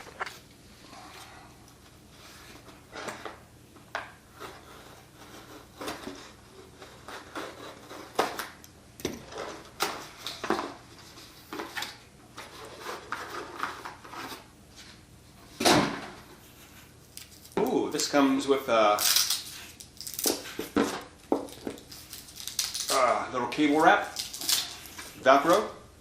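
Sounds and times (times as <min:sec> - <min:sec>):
packaging rustling and crinkling: 0:19.0 - 0:23.0, 0:24.0 - 0:25.2.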